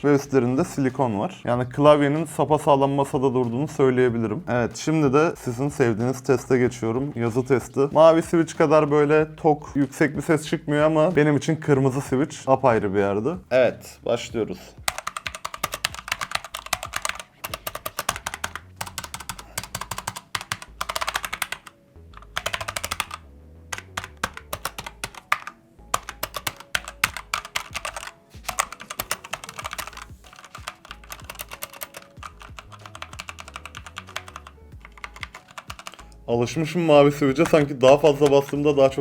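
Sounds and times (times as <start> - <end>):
mechanical keyboard typing: 14.8 - 36.3, 37.3 - 39.0.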